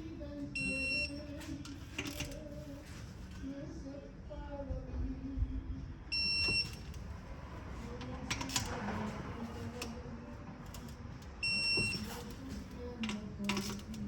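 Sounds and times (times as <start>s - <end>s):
torque wrench beeping: 0.5s - 2.4s, 6.1s - 7.1s, 10.7s - 12.8s.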